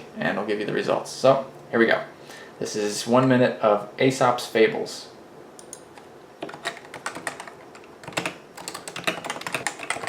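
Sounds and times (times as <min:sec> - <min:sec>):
fast typing on keyboard: 0:06.4 - 0:10.0.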